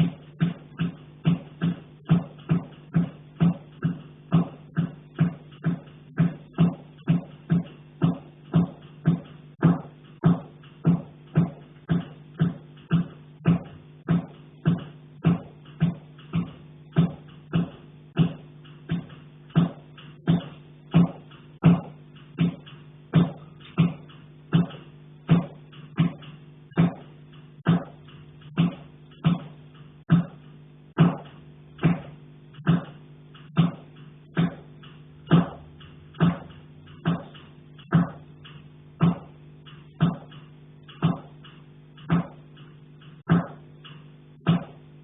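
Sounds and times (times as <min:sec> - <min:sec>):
knocking on a pipe: 0:00.0 - 0:26.2, 0:26.8 - 0:27.0, 0:27.6 - 0:30.4, 0:31.0 - 0:33.0, 0:36.2 - 0:38.2, 0:39.0 - 0:39.3, 0:40.0 - 0:40.3, 0:42.1 - 0:42.4, 0:44.4 - 0:44.8.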